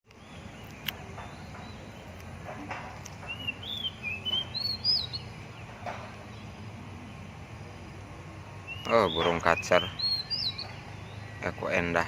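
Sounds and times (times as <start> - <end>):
bird singing whistled notes: 0.1 - 2.2, 3.2 - 5.7, 8.6 - 11.8.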